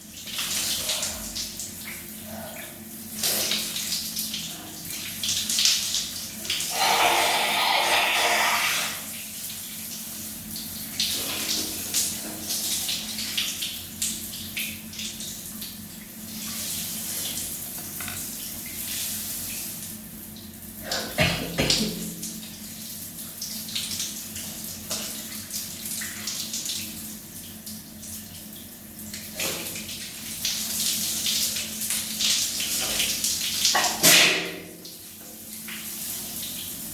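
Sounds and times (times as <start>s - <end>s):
shower spray running: 6.4s - 9.5s.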